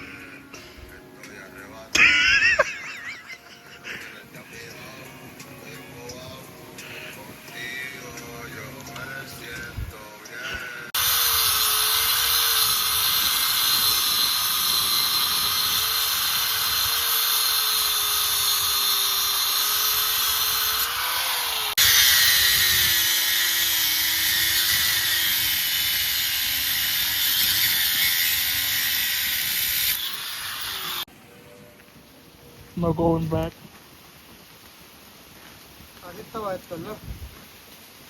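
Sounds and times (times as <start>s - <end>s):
angle grinder cutting metal: 10.9s - 31.1s.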